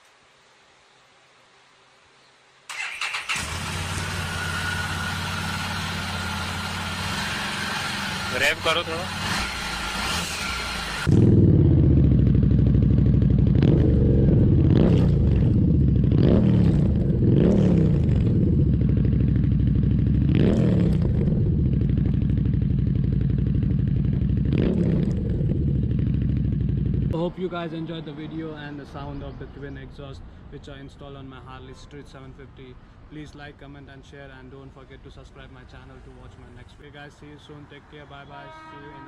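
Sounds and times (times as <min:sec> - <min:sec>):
motorcycle engine revving: 0:02.7 - 0:27.2.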